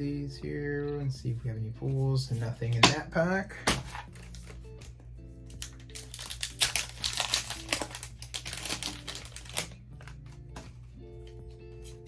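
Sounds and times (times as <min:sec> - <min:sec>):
foil wrapper crinkling: 0:05.5 - 0:10.4.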